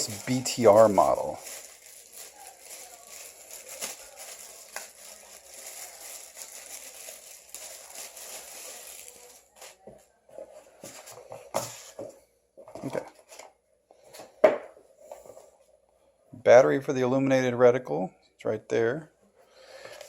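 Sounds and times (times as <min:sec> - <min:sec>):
packaging crinkling and rustling: 0:00.0 - 0:10.0.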